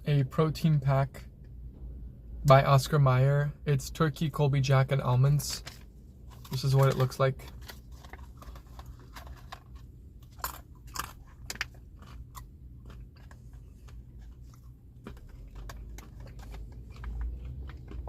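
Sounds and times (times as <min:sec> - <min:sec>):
chewing and crunching: 0:05.6 - 0:18.0.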